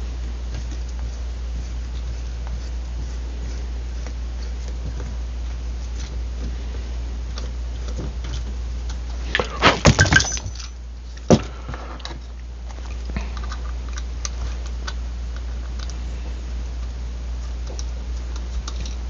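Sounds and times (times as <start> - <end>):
steady low hum: 0.0 - 19.0
metal hand tools clinking: 9.9 - 10.8.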